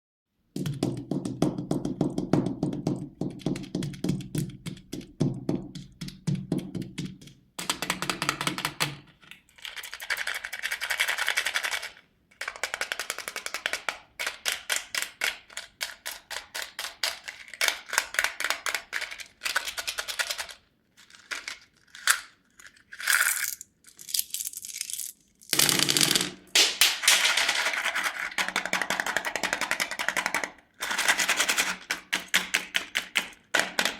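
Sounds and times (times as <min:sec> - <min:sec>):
candy wrappers crackling: 0:18.8 - 0:25.7.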